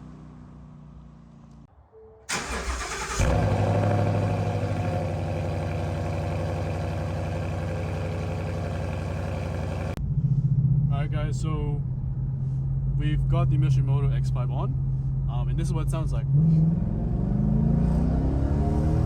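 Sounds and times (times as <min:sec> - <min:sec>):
starter cranking: 0:02.3 - 0:04.7
car engine idling: 0:02.3 - 0:10.0.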